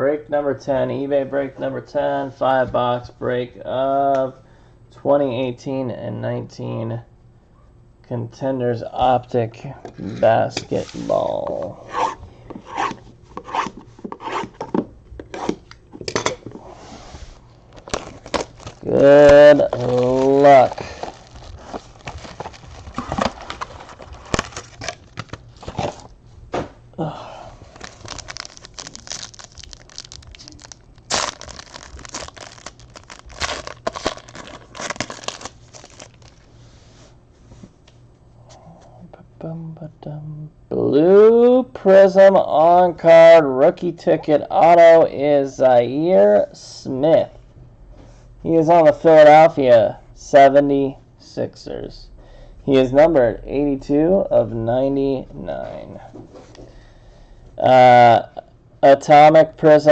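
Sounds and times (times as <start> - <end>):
cardboard and plastic scraping: 16.5 - 26.1
wrappers crinkling: 17.5 - 26.1, 27.6 - 36.5
card packs being torn open: 17.7 - 26.1, 27.7 - 36.4.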